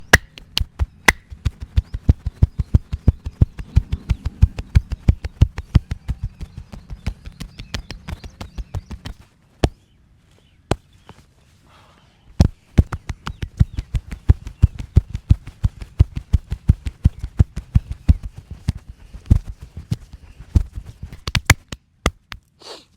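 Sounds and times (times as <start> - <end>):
hands slapping on body: 0.0 - 3.6, 6.5 - 9.8, 10.7 - 11.2, 12.4 - 22.5.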